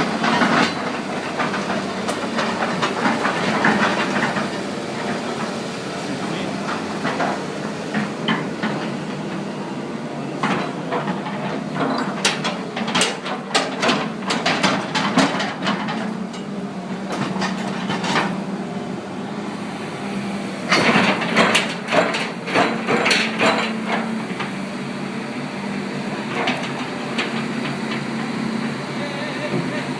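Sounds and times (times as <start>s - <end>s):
excavator running: 0.0s - 29.9s
rapid knocks and clatter: 12.2s - 16.1s.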